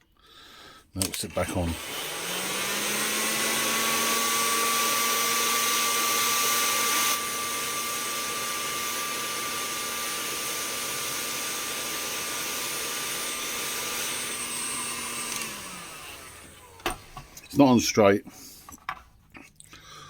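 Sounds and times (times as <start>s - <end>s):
heat gun fan whining: 1.0s - 17.8s.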